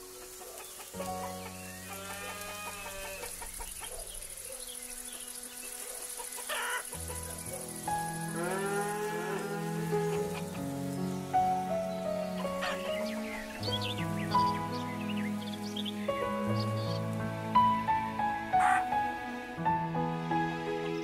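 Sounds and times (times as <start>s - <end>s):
farm animals calling: 0.0s - 10.8s, 12.1s - 15.9s, 18.6s - 18.9s
music with slow held chords: 0.0s - 21.0s.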